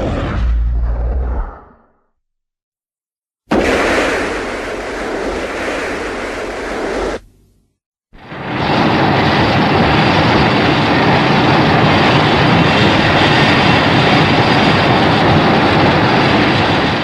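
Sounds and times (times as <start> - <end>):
loud steady rushing noise: 8.2 - 17.0.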